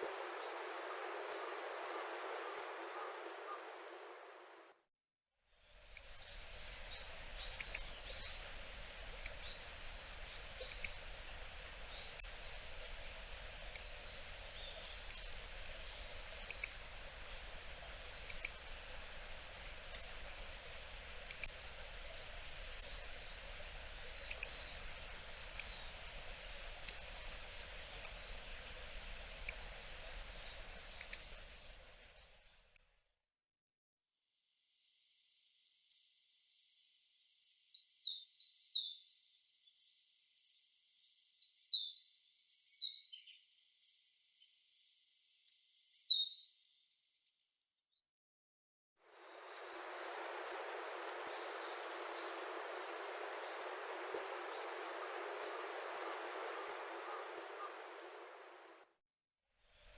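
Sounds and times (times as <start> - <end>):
bird giving sharp tik calls: 0.0 - 4.4, 49.2 - 58.7
steady background hiss: 0.0 - 4.7, 5.6 - 32.8, 49.1 - 58.9.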